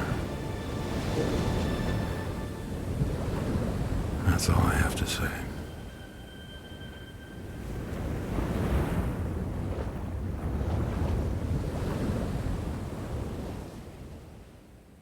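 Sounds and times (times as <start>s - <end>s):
ocean surf washing: 0.0s - 14.5s.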